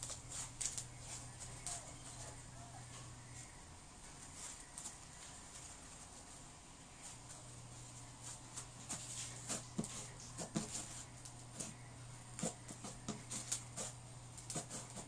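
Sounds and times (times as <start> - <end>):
steady low hum: 0.0 - 15.0.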